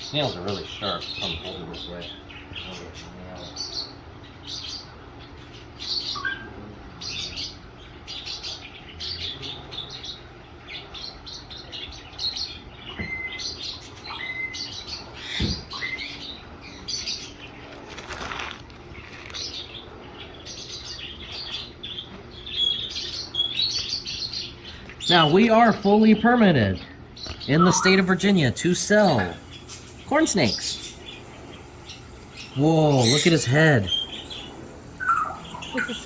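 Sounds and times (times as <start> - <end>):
small birds chirping: 0.0 - 36.0
whistled bird notes: 5.8 - 6.5, 12.4 - 17.1, 27.4 - 36.0.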